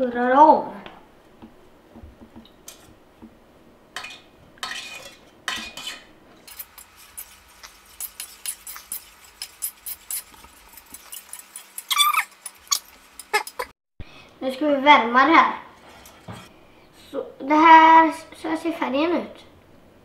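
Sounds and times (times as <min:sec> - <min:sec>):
utensil scraping and clinking container: 0:04.0 - 0:13.7
utensil stirring thick mixture: 0:04.8 - 0:13.7.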